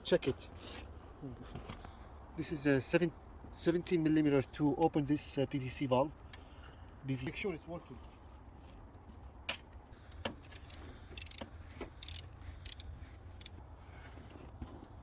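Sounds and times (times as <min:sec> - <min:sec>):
wrench metallic clicks: 0:10.5 - 0:11.4, 0:12.0 - 0:13.6.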